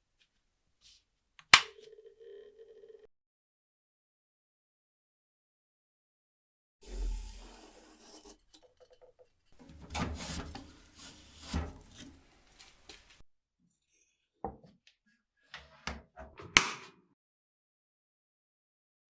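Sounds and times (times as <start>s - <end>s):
tools rubbing and clattering: 6.8s - 13.2s.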